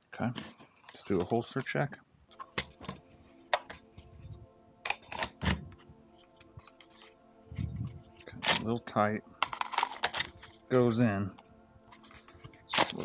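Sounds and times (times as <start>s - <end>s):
pistol clicking into plastic holster: 4.9s - 5.6s, 9.4s - 10.5s.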